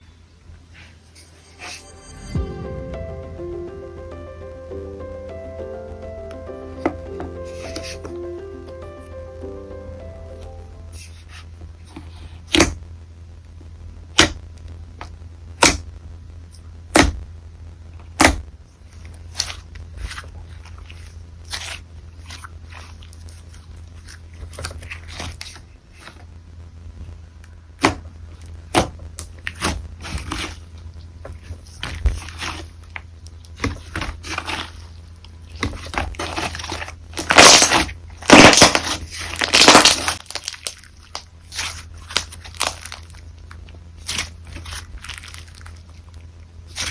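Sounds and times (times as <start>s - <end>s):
crunchy slime squishing: 13.5s - 17.4s, 18.0s - 26.4s, 27.0s - 46.9s
slime popping: 27.8s - 46.9s.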